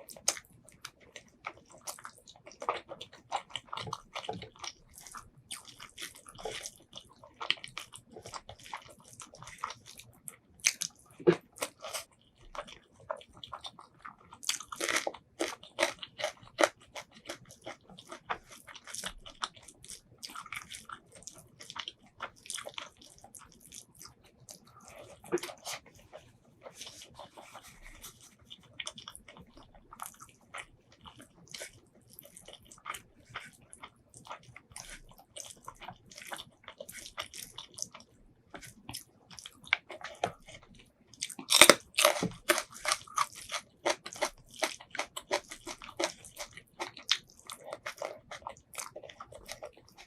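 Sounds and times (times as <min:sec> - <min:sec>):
person chewing and biting food: 0:00.0 - 0:50.0.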